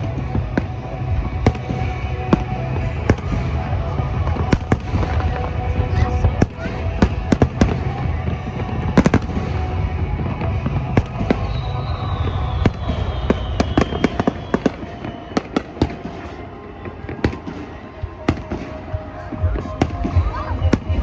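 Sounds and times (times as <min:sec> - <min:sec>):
fireworks popping and cracking: 0:00.0 - 0:21.0
falling firework whistle: 0:06.4 - 0:20.9.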